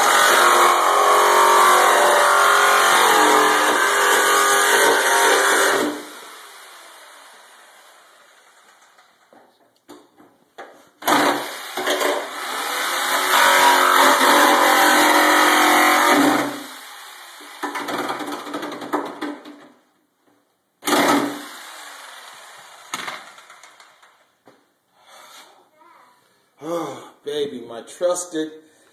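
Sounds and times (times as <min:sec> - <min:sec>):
knocks and rattles: 0:17.6 - 0:19.9.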